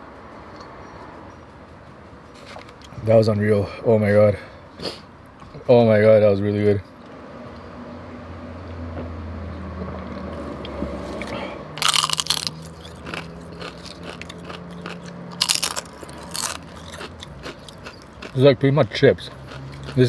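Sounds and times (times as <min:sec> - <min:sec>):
chewing: 0:10.4 - 0:18.4, 0:19.2 - 0:20.0
crunching tortilla chips: 0:10.4 - 0:18.5, 0:19.2 - 0:20.0.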